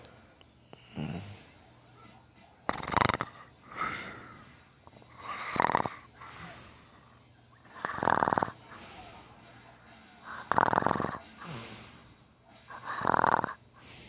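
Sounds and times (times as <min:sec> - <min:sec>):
soft breaths: 0:00.0 - 0:14.0
loud rattling snores: 0:02.7 - 0:03.5, 0:05.2 - 0:06.1, 0:07.7 - 0:08.6, 0:10.3 - 0:11.6, 0:12.8 - 0:13.6.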